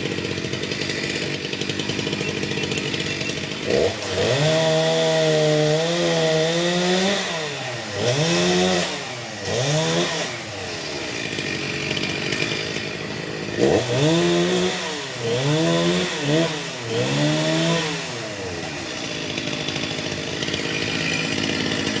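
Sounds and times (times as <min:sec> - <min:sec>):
chainsaw engine revving: 0:00.0 - 0:22.0.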